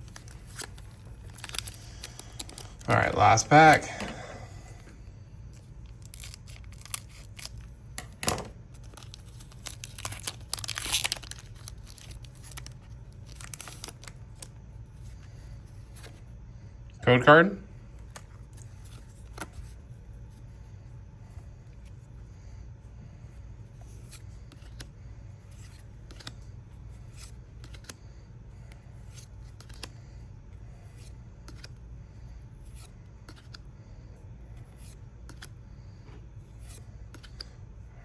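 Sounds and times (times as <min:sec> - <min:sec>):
trading cards clicking and sliding: 0:00.0 - 0:04.6, 0:23.7 - 0:28.1, 0:28.7 - 0:30.1, 0:30.8 - 0:31.8, 0:32.6 - 0:33.7, 0:34.5 - 0:37.6
steady low hum: 0:00.0 - 0:38.0.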